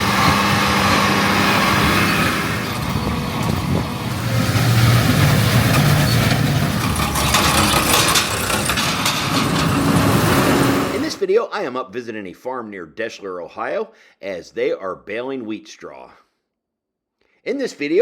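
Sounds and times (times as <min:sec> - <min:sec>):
machinery knocks and clatter: 0:00.0 - 0:11.2
tractor engine running: 0:00.0 - 0:11.2.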